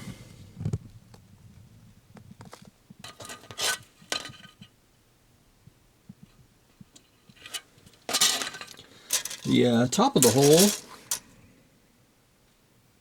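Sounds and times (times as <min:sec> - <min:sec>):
hard plastic parts clicking: 0:08.2 - 0:09.5, 0:10.2 - 0:11.2.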